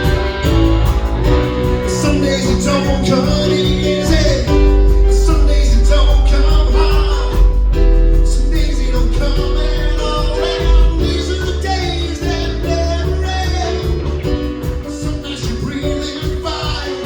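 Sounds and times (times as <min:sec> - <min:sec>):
live band playing: 0:00.0 - 0:17.0
person singing: 0:00.0 - 0:17.0
strong bass: 0:00.0 - 0:17.0.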